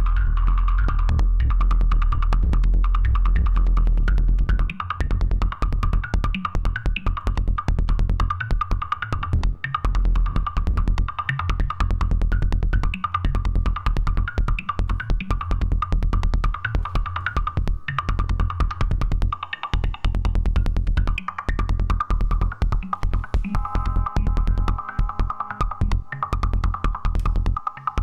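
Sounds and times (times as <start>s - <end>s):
heavy bass and kick: 0.0s - 28.0s
fast clicky percussive hits: 0.1s - 28.0s
mid-high synth tone: 23.3s - 27.4s.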